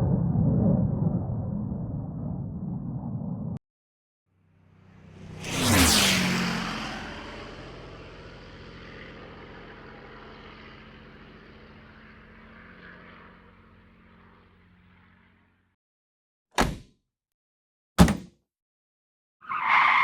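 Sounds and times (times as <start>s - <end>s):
vehicle engine moving away: 4.6s - 15.3s.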